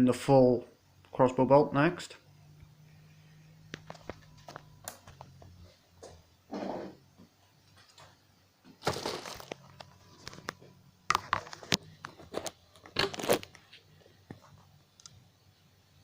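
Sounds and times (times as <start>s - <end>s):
crinkling handling noise: 3.7s - 5.8s, 7.7s - 14.7s.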